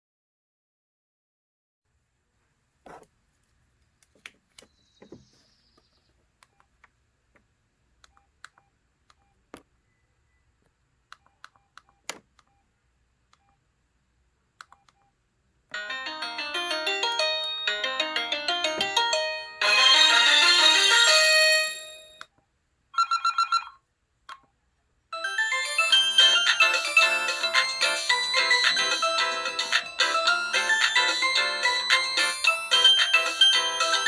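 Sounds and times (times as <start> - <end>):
polyphonic phone ringtone: 15.7 - 22.3, 23.0 - 23.8, 25.2 - 34.0.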